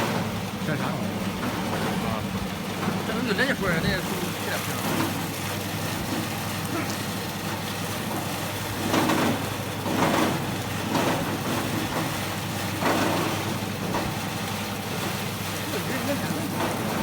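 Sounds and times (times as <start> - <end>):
cutting machine motor hum: 0.0 - 12.5.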